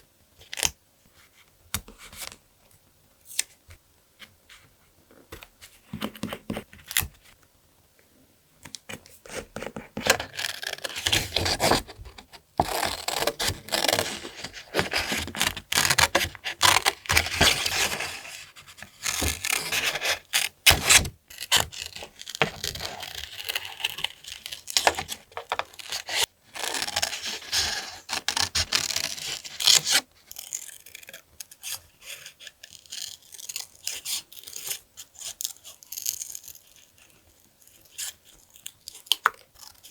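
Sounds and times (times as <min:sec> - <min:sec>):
paper tearing and rubbing: 0:10.2 - 0:30.0.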